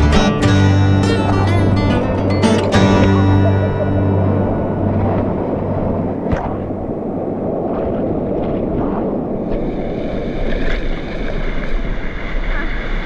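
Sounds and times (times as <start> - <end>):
waterfall rushing: 0.0 - 7.6.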